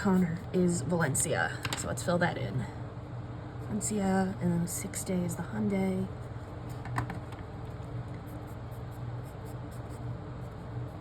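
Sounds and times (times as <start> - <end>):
steady low hum: 0.0 - 11.0
pen scratching on paper: 8.1 - 11.0.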